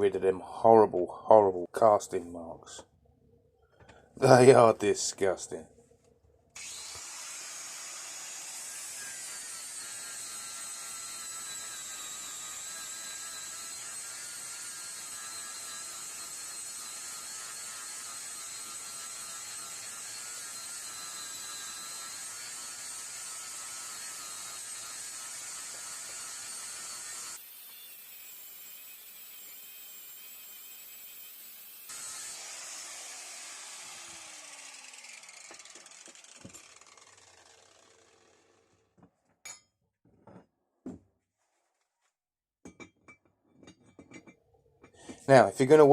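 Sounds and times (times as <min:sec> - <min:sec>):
power grinder whining: 0:06.6 - 0:38.8.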